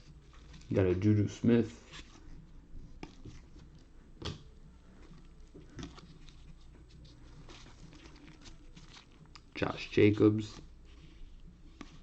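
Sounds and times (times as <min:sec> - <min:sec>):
trading cards rustling and tapping: 0:01.9 - 0:10.8.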